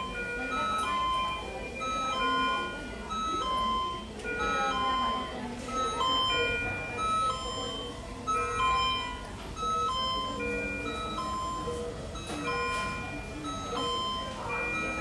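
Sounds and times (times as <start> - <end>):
monitor alarm beeps: 0.0 - 15.0.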